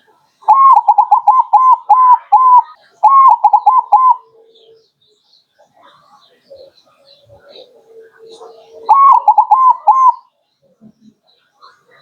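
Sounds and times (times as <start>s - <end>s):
dove cooing: 0.5s - 4.8s, 6.5s - 10.2s.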